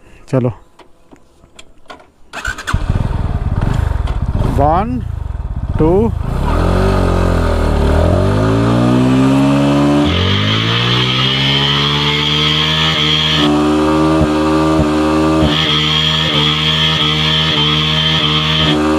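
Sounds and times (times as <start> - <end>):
motorcycle engine revving: 2.4 - 18.9
high steady squeal: 10.0 - 13.5, 15.4 - 18.9.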